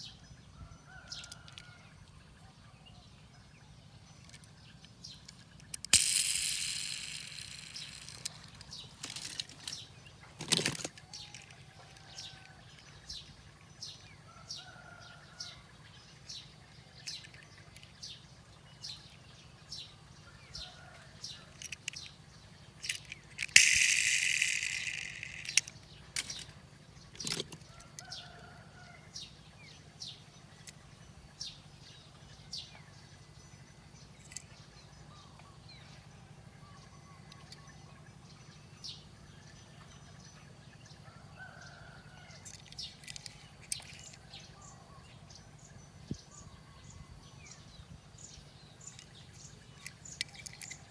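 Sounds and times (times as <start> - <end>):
sharp clicks: 5.3 - 9.8, 22.8 - 26.5.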